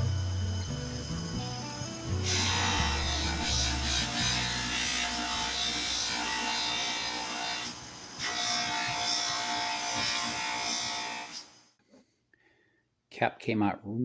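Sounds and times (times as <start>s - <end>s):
polishing wheel whirring and rasping: 0.0s - 6.2s.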